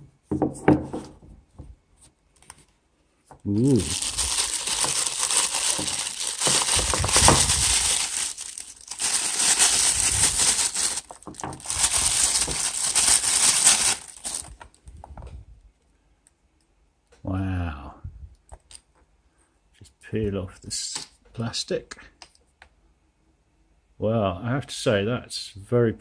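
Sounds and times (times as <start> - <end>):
packaging crinkling: 3.5 - 14.8.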